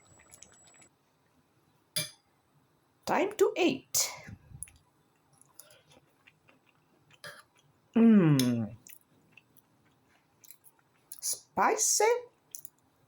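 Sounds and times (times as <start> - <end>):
person chewing: 5.4 - 7.7, 8.4 - 11.2
person humming mmm: 8.0 - 8.8.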